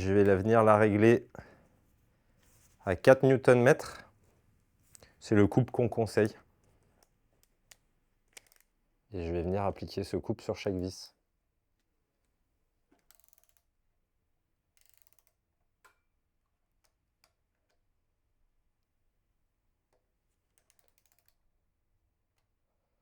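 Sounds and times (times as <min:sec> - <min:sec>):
torque wrench ratcheting clicks: 0:13.0 - 0:13.6, 0:14.8 - 0:15.3.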